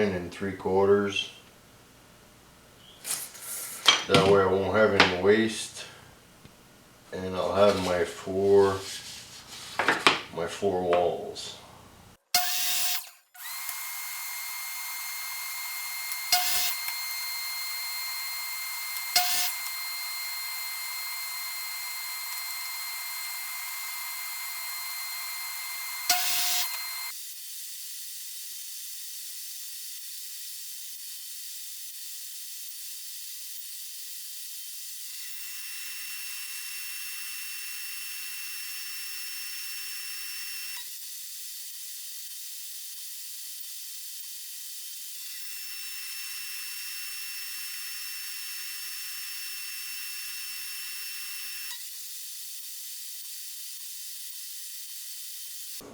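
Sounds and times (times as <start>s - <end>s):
power tool motor whining: 12.4s - 27.2s, 29.4s - 55.9s.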